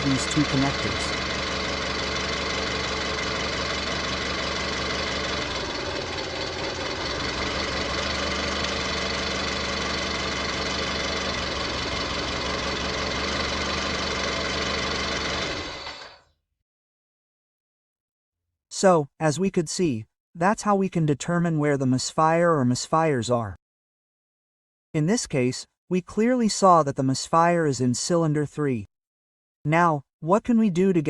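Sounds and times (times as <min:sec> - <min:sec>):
car engine idling with a misfire: 0:00.0 - 0:16.2.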